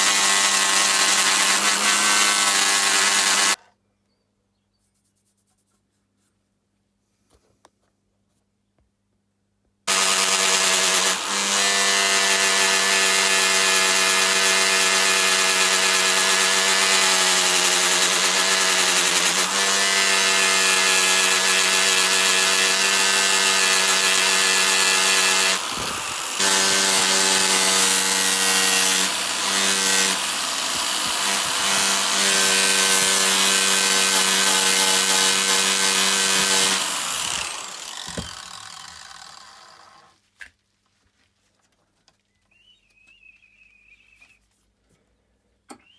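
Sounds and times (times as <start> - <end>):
power tool whining on metal: 0.0 - 3.6, 9.9 - 40.2.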